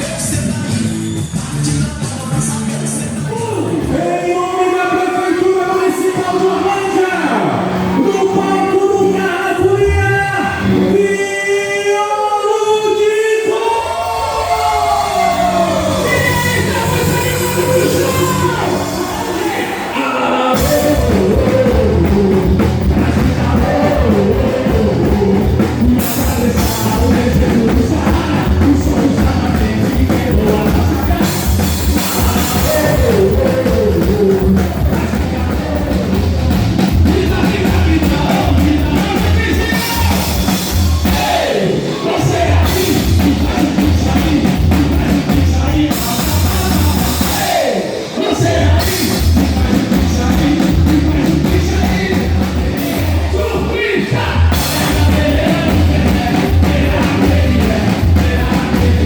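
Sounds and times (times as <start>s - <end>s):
live band music: 0.0s - 11.7s, 13.4s - 59.0s
person singing: 0.0s - 59.0s
pounding drums and bass: 14.6s - 19.8s, 20.6s - 47.7s, 48.4s - 59.0s.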